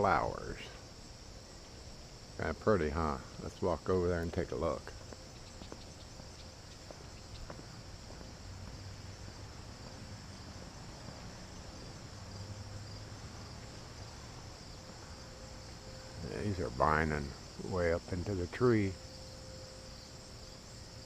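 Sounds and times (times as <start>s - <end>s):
insects trilling: 0.0s - 21.0s
light footsteps: 3.3s - 18.4s.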